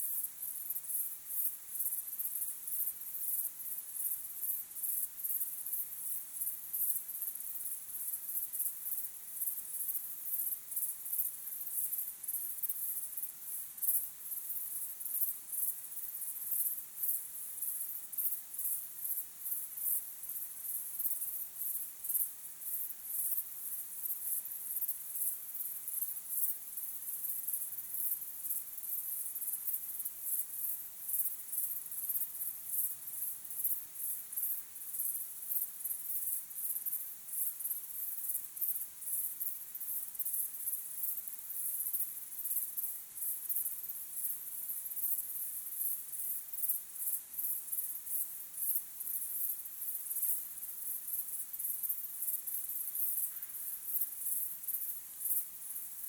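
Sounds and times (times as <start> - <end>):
crickets chirping: 0.0 - 56.0.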